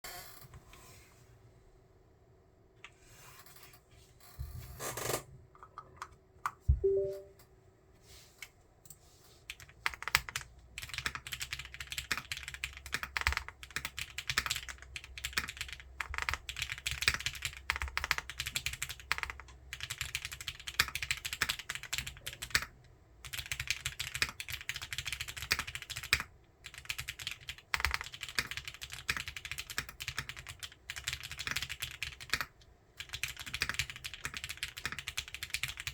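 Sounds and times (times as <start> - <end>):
typing on mechanical keyboard: 9.5 - 35.9.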